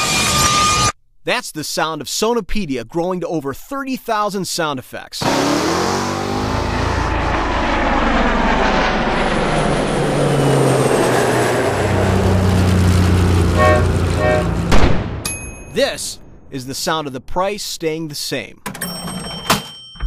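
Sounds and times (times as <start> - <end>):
engine-like drone: 5.2 - 14.8.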